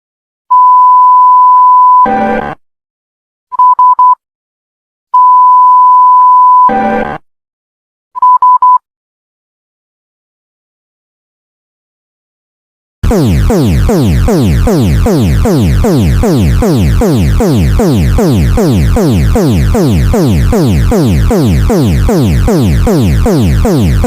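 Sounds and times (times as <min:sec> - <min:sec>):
electronic alarm tone sweeping down: 0:13.0 - 0:24.0.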